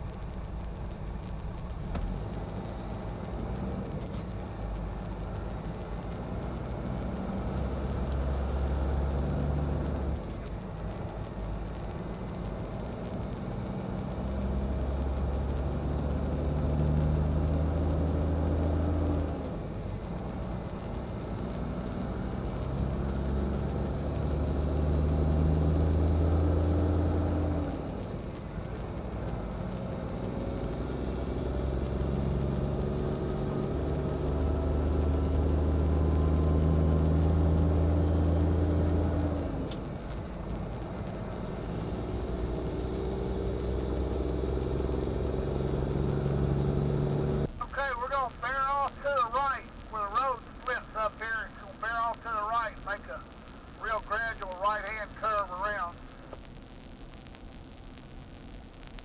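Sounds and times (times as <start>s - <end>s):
diesel truck engine shifting gears: 5.6s - 10.5s, 12.0s - 48.1s.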